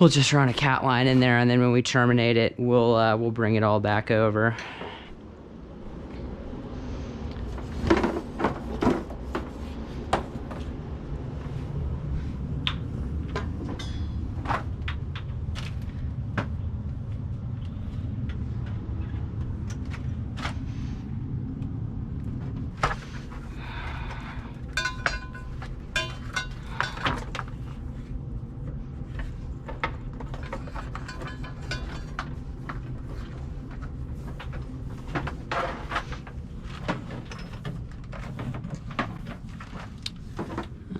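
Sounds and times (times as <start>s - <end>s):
steady low hum: 0.0s - 40.9s
clicks and rattles of hand work: 22.8s - 27.8s, 29.0s - 40.8s.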